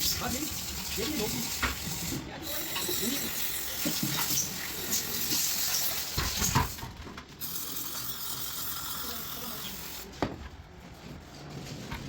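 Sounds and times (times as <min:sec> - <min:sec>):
scrubbing and handling noises: 0:10.4 - 0:12.0.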